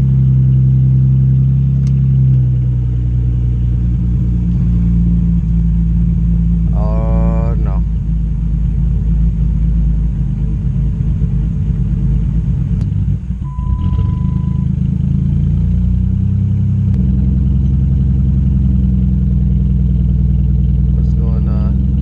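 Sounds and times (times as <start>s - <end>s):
car engine humming: 0.0s - 22.0s
short electronic beep: 13.4s - 14.8s.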